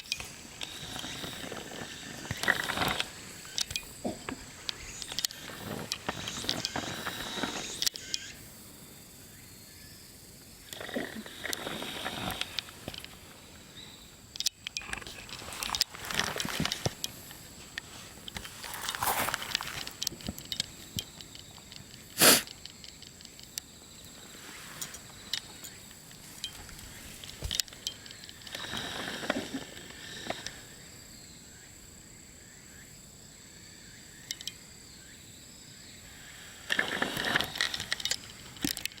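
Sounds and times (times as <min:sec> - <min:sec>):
soft rustling: 0:15.0 - 0:21.4, 0:24.0 - 0:29.6
person sneezing: 0:22.2 - 0:22.5.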